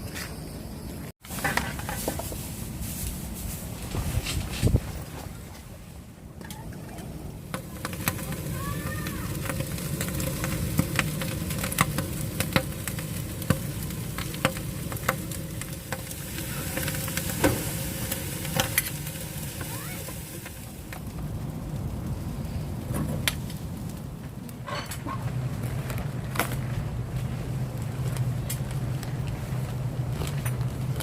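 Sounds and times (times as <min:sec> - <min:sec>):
meat sizzling on a hot griddle: 0:07.6 - 0:21.1.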